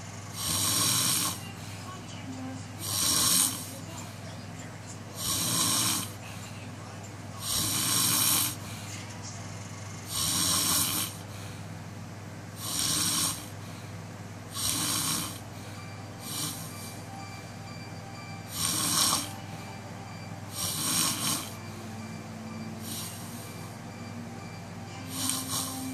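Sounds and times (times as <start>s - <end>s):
person snoring raspily: 0.2s - 1.5s, 2.8s - 3.8s, 5.2s - 6.2s, 7.4s - 8.7s, 9.7s - 11.3s, 12.6s - 13.6s, 14.5s - 15.5s, 16.2s - 17.0s, 18.4s - 19.4s, 20.5s - 21.8s, 22.8s - 24.1s, 25.0s - 25.9s.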